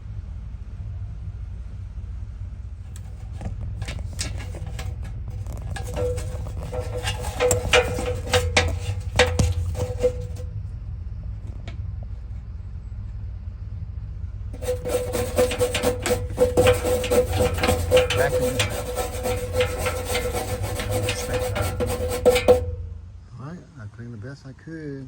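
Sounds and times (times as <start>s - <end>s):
brush scrubbing rusty metal: 2.9s - 10.5s, 14.6s - 23.0s.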